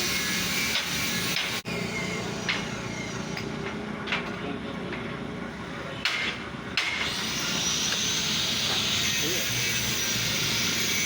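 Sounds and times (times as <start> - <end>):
workshop machinery running: 0.0 - 11.0
sharp metallic knocks: 6.0 - 7.1.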